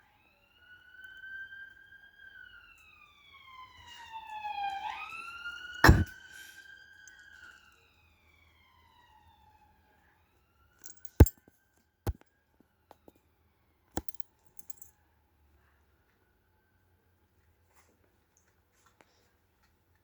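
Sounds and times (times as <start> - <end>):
sharp clicks: 14.0 - 14.8.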